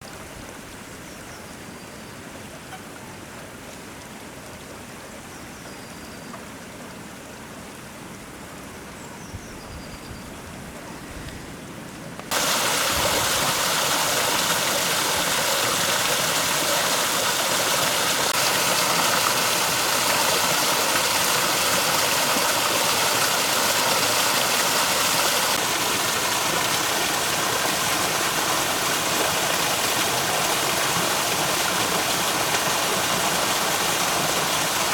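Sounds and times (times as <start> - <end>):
water rushing over waterfall: 12.3 - 34.9.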